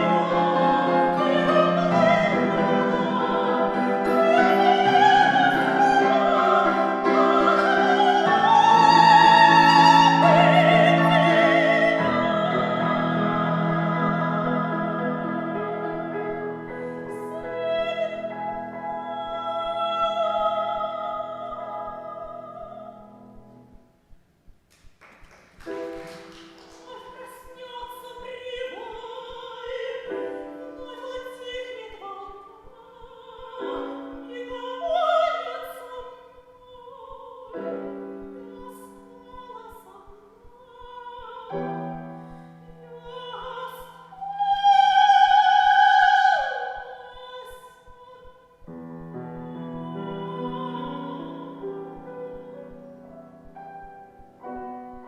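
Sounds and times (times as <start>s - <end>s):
soprano voice singing: 0.0s - 23.5s, 26.2s - 55.0s
piano accompaniment: 0.0s - 23.8s, 48.6s - 55.0s.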